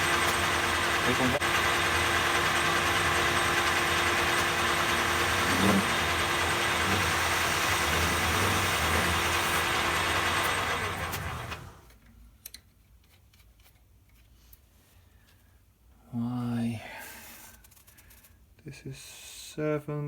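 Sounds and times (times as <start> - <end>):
metal lathe running: 0.0 - 11.8.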